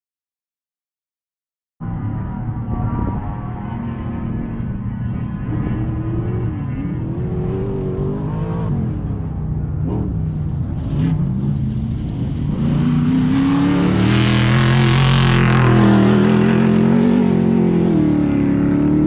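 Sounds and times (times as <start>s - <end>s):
race vehicle engine revving: 2.1s - 19.0s.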